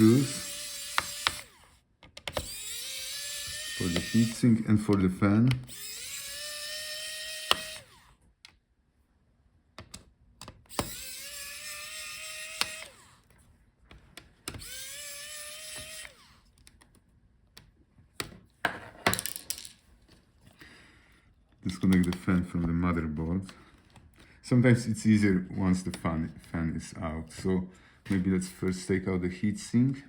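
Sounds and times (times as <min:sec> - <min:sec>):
electric screwdriver whining: 0:00.0 - 0:08.2, 0:10.6 - 0:13.3, 0:14.2 - 0:16.6
clicks of screws and parts: 0:00.1 - 0:08.6.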